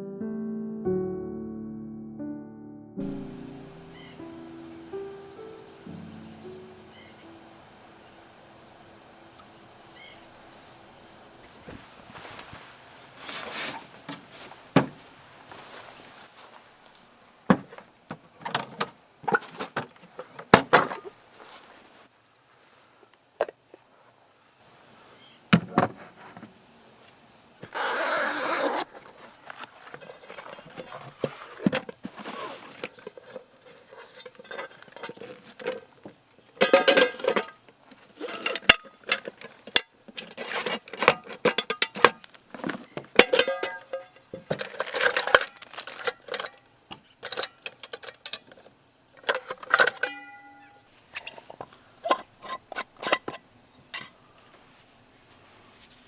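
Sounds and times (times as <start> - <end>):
dishes and utensils clinking: 29.8 - 46.6, 47.2 - 54.2.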